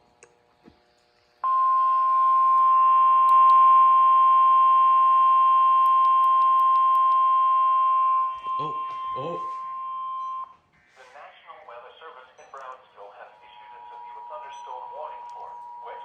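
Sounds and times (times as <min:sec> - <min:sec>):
emergency alert beep: 0:01.4 - 0:10.6, 0:13.6 - 0:16.0.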